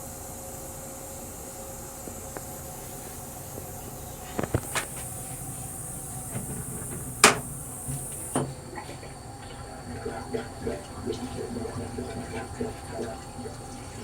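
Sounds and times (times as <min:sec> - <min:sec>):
high hiss: 0:00.0 - 0:08.6
railcar running noise: 0:00.0 - 0:10.3
short knocks: 0:06.2 - 0:08.6.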